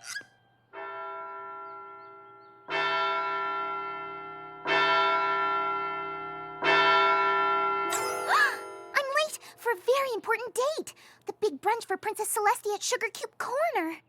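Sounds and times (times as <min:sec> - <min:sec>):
large bell tolling: 0:00.7 - 0:09.6.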